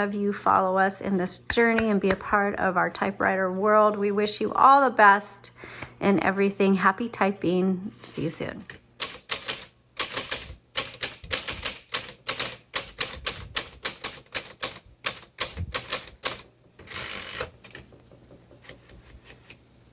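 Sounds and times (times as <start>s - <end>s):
typewriter key strikes: 9.0s - 18.4s
typewriter rasping sweep: 9.0s - 19.6s.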